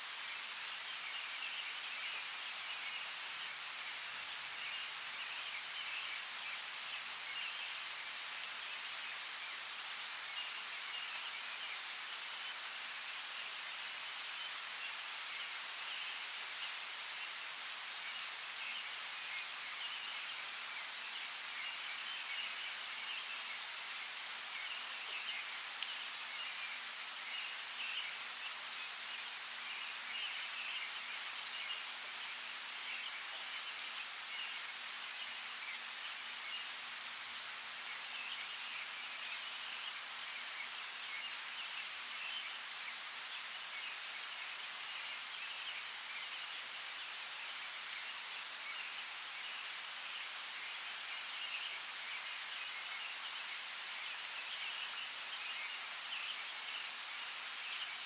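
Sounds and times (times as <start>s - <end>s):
rain pattering: 0.0s - 46.6s.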